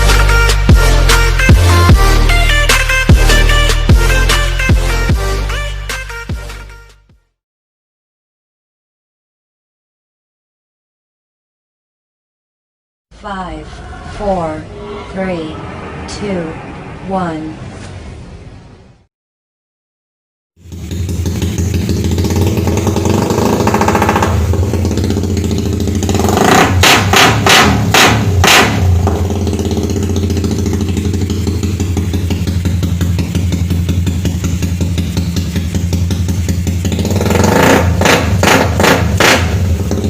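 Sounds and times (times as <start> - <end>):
motorcycle engine idling: 20.6 - 40.0
motorcycle engine revving: 20.6 - 40.0.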